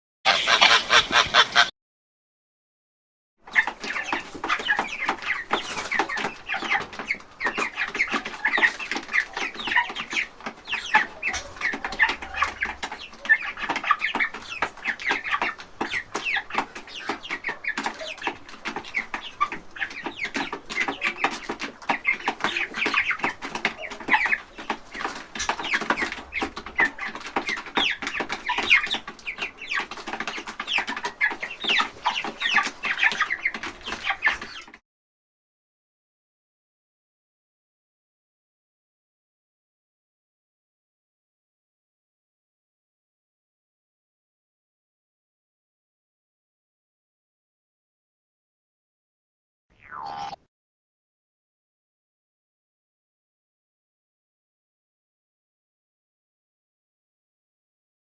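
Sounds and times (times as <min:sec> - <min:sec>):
chickens clucking: 0:00.3 - 0:01.7, 0:03.5 - 0:34.8.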